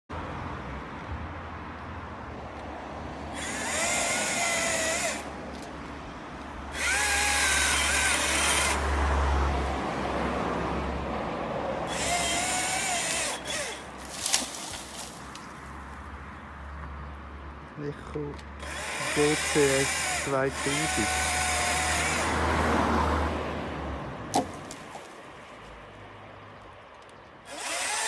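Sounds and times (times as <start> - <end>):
chainsaw running: 3.3 - 5.3, 6.7 - 8.8, 11.9 - 14.8, 18.6 - 22.5, 27.5 - 28.0.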